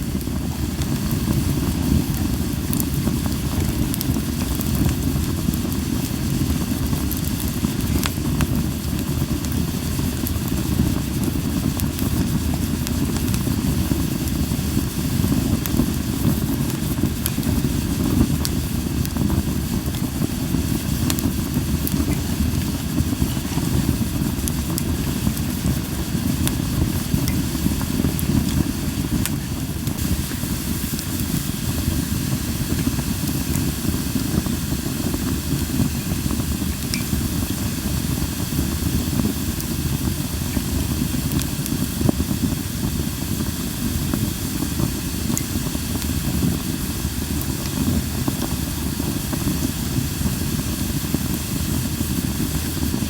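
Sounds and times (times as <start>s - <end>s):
campfire hissing and crackling: 0.0s - 53.0s.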